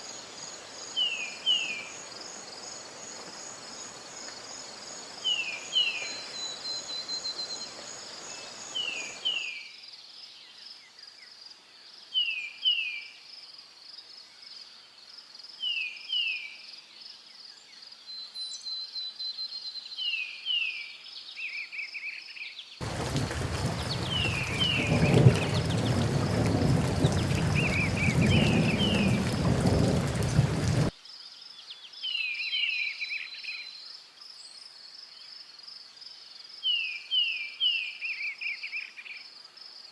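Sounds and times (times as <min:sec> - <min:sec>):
bird chirping: 0:17.4 - 0:29.4.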